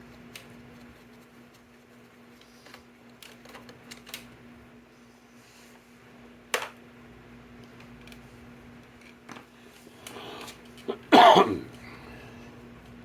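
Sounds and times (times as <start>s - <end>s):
man coughing: 10.9s - 11.8s.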